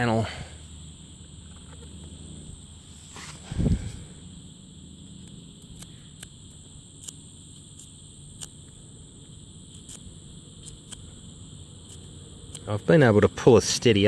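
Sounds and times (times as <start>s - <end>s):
steady low hum: 0.0s - 14.0s
electric arc crackling: 4.4s - 14.0s.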